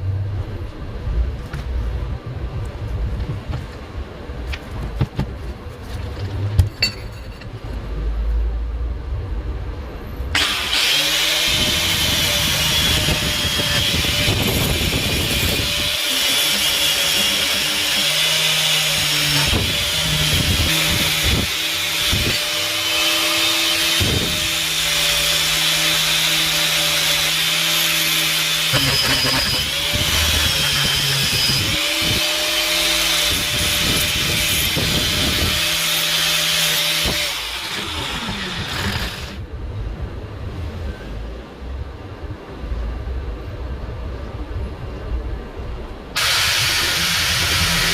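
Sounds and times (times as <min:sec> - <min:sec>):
power tool abrading metal: 0:10.4 - 0:39.4, 0:46.2 - 0:47.9.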